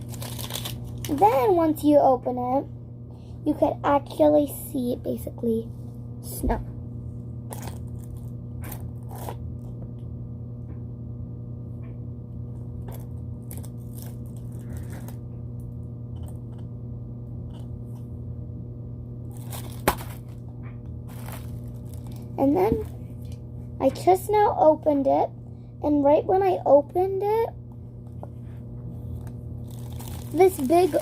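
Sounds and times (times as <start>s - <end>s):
plastic packaging crinkling: 0.0s - 1.5s, 7.5s - 9.4s, 12.8s - 15.2s, 19.3s - 20.4s, 21.1s - 23.3s, 29.1s - 31.0s
steady low hum: 0.0s - 31.0s.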